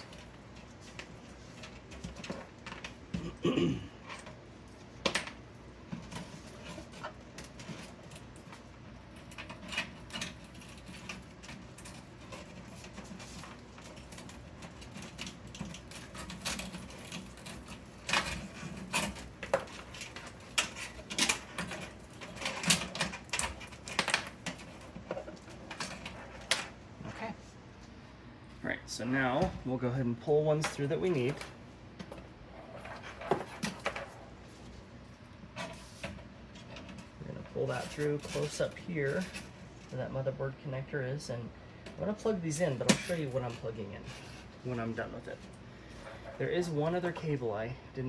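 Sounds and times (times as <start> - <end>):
cables clicking and rustling: 0.0 - 3.4, 4.0 - 28.0, 30.3 - 40.0.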